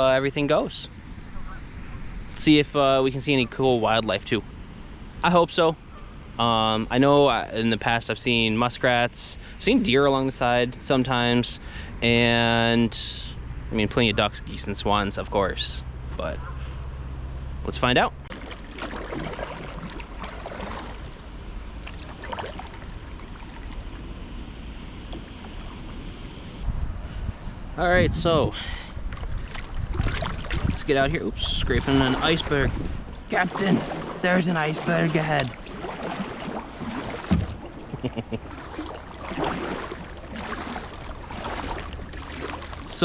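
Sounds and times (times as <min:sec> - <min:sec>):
water lapping around kayak: 0:16.0 - 0:27.7, 0:28.6 - 0:43.0
soft paddle splashes: 0:18.2 - 0:26.6, 0:29.0 - 0:43.0
loud thump on hull: 0:35.4 - 0:37.9.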